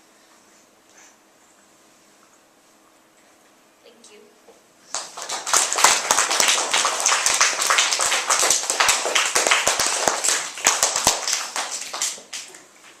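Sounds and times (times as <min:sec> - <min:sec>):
small group applauding: 0:04.9 - 0:13.0.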